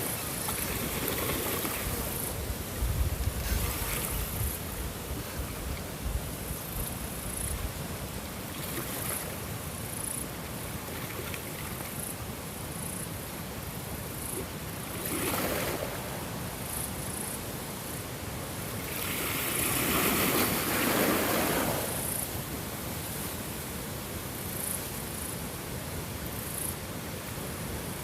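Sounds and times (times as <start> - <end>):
ocean waves washing in: 14.2 - 18.0, 18.7 - 23.1.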